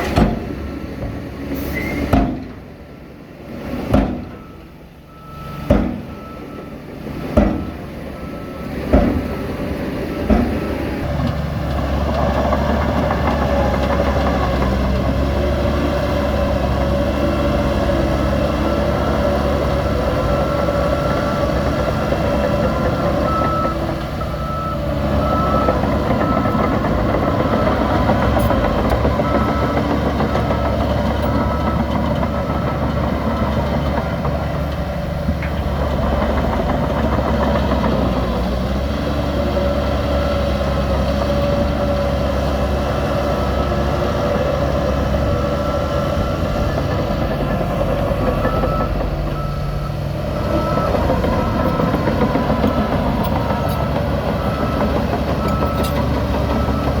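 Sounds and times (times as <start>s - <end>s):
heavy diesel machinery running: 0.0s - 57.0s
reversing alarm beeping: 4.4s - 6.8s, 7.6s - 10.7s, 15.0s - 33.7s, 42.7s - 57.0s.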